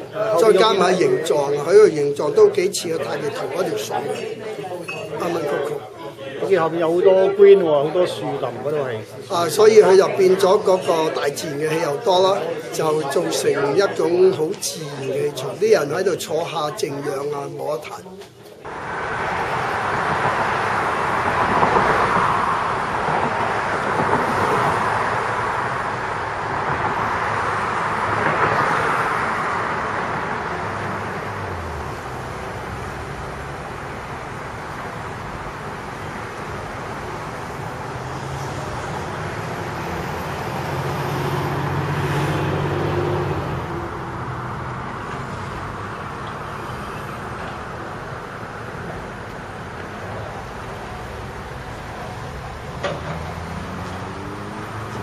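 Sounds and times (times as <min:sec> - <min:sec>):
cars passing: 0:00.0 - 0:55.0
heavy vehicle engine hum: 0:18.6 - 0:55.0.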